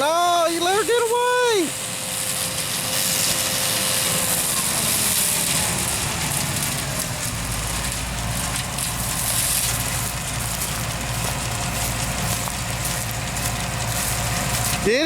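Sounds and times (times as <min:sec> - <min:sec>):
combine harvester running: 0:00.0 - 0:15.0.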